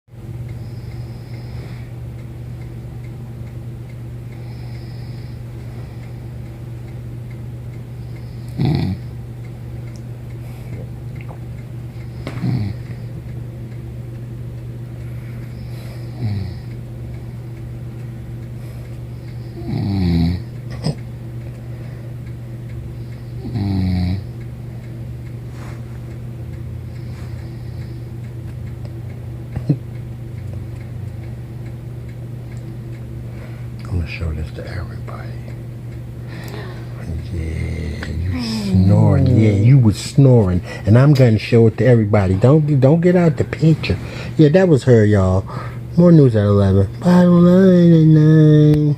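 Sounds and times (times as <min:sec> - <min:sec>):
loud snort: 0:08.5 - 0:09.0
woman snoring: 0:08.5 - 0:09.0, 0:12.4 - 0:12.8, 0:19.6 - 0:20.4.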